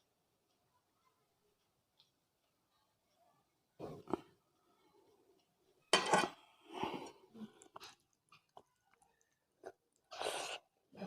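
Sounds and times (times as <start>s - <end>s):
wet chewing and mouth smacks: 7.5s - 10.7s.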